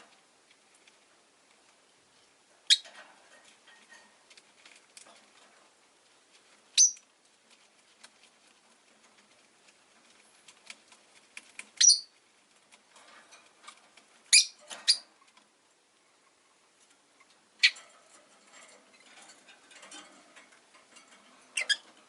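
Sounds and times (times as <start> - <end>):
faint clicking and rustling: 0.0 - 22.0
lovebirds chirping: 2.6 - 2.9, 6.7 - 7.1, 11.7 - 12.2, 14.3 - 15.1, 17.6 - 17.8.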